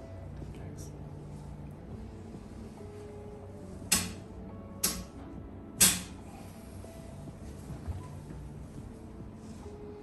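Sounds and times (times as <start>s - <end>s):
faint background music: 0.0s - 10.0s
sharp slaps: 3.9s - 5.2s, 5.8s - 6.2s.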